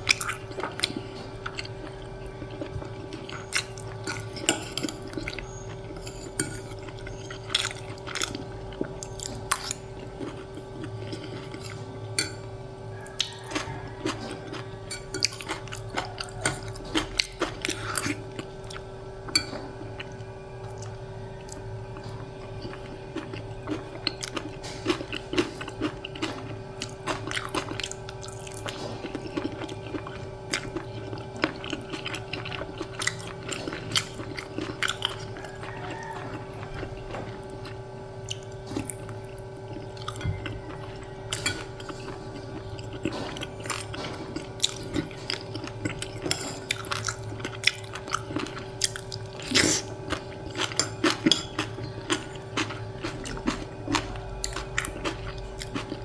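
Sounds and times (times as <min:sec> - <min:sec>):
person chewing and biting: 0:19.8 - 0:56.0.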